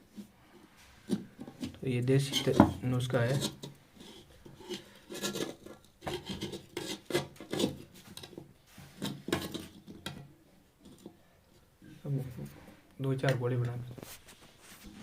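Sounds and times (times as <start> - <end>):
scraping and rubbing sticky mixture: 0.0 - 10.0, 13.9 - 15.0.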